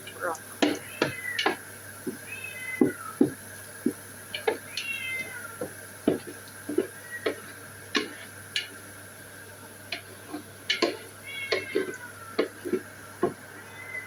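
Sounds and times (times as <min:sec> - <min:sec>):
high-pitched animal cries: 0:02.3 - 0:03.0, 0:11.2 - 0:12.5, 0:13.5 - 0:14.0
short pops and knocks: 0:05.6 - 0:08.2.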